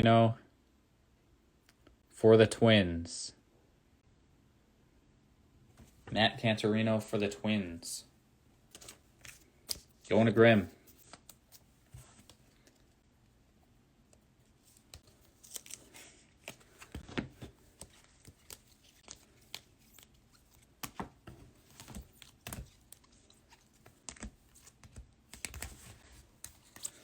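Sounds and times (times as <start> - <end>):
trading cards rustling and clicking: 8.7 - 13.0, 14.5 - 27.0.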